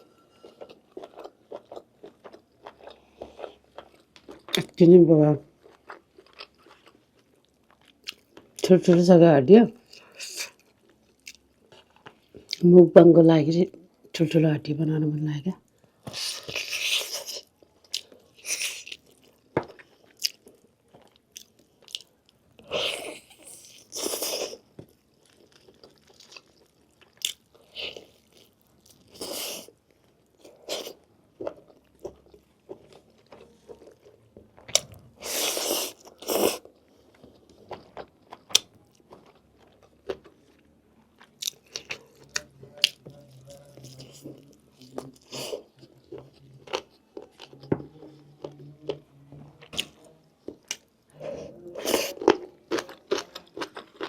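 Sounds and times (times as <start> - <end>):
person chewing meat: 0.1 - 4.6, 5.6 - 8.6, 16.0 - 47.6.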